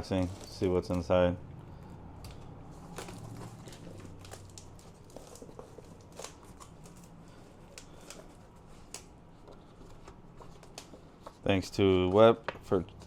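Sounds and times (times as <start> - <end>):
cardboard packaging being handled: 0.0 - 1.2, 2.2 - 13.0.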